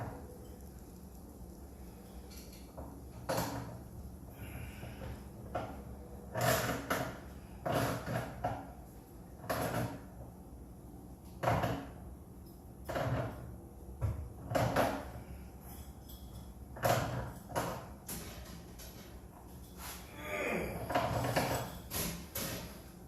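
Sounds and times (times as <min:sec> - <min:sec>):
metal tools clunking and scraping: 0:14.6 - 0:20.1, 0:20.8 - 0:22.9.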